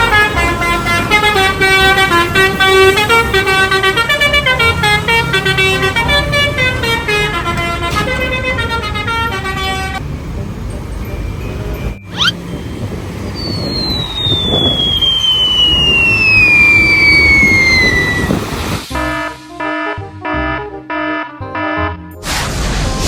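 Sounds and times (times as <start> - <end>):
multi-tone musical bus horn: 0.0 - 10.1, 16.6 - 22.2
low engine rumble: 5.3 - 19.1.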